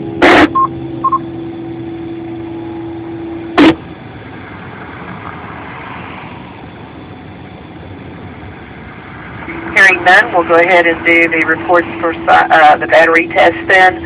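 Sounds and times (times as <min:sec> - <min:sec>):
low background noise: 0:00.0 - 0:14.0
radio channel hum: 0:00.0 - 0:14.0
radio squelch burst: 0:00.2 - 0:00.6, 0:03.6 - 0:03.8, 0:09.5 - 0:14.0.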